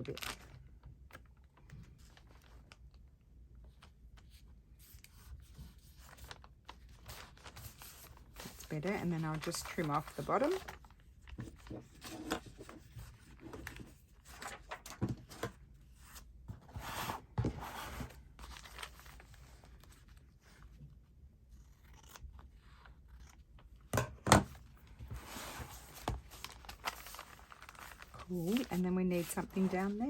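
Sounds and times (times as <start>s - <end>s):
paper rustling: 4.8s - 20.8s, 24.6s - 30.0s.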